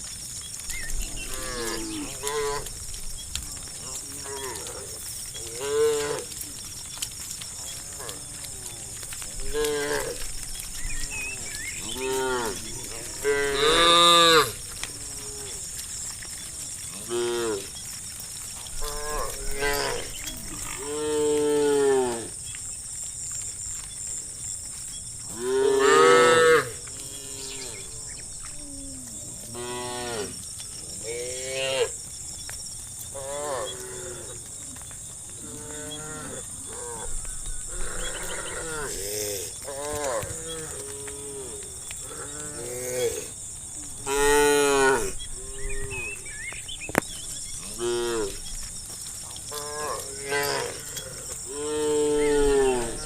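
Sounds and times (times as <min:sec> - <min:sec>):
cows mooing: 0:01.0 - 0:02.8, 0:03.7 - 0:17.8, 0:18.7 - 0:22.4, 0:25.3 - 0:28.2, 0:35.4 - 0:37.1, 0:37.7 - 0:43.3, 0:44.0 - 0:46.2, 0:47.4 - 0:48.4, 0:49.4 - 0:53.0.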